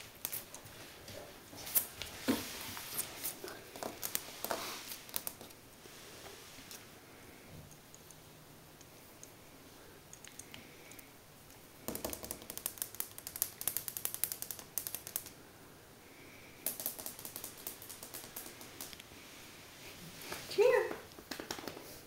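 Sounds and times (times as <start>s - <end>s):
rapid light clicks and taps: 10.1s - 15.4s, 16.6s - 19.1s.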